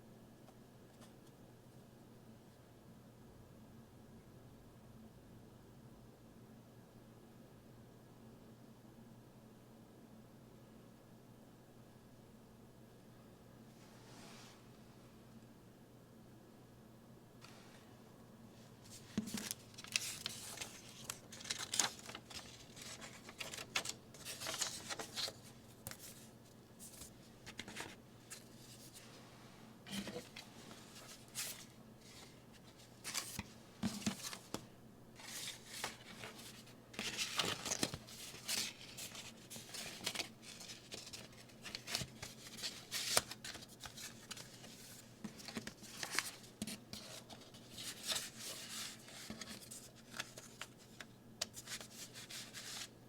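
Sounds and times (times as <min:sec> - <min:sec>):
packaging rustling and crinkling: 0:18.9 - 0:26.2, 0:35.2 - 0:50.8.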